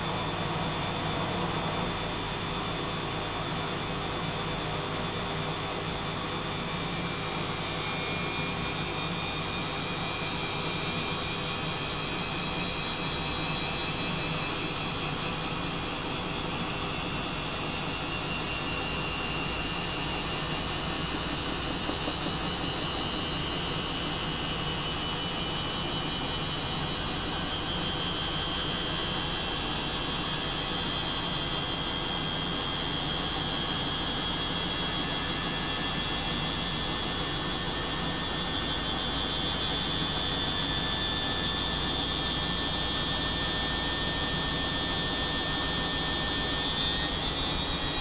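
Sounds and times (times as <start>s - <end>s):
washing machine running: 0.0s - 48.0s
high motor whine rising: 18.3s - 25.8s.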